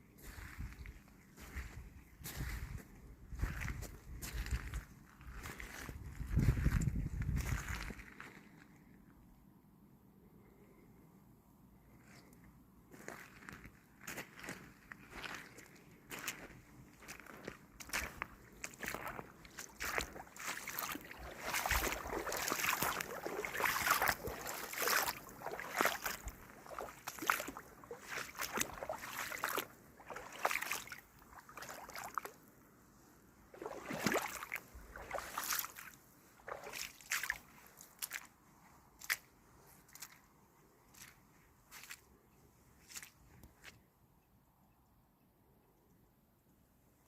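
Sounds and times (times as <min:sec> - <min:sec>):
footsteps splashing through water: 0:00.2 - 0:08.0, 0:14.2 - 0:32.4, 0:33.5 - 0:38.4, 0:39.0 - 0:40.3, 0:40.9 - 0:42.1, 0:42.9 - 0:43.8.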